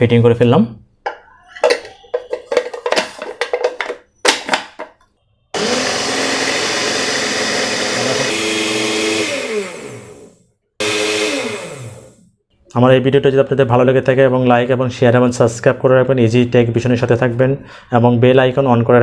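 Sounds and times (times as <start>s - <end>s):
blender motor running: 5.6s - 12.3s.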